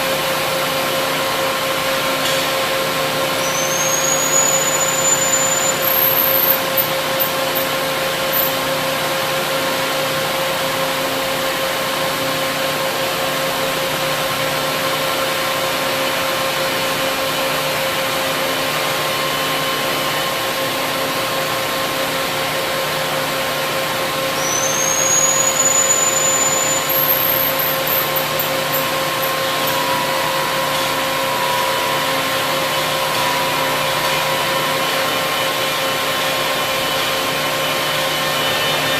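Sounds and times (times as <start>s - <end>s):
machine hum and whine: 0.0s - 38.9s
high whine rising in pitch: 24.1s - 38.9s.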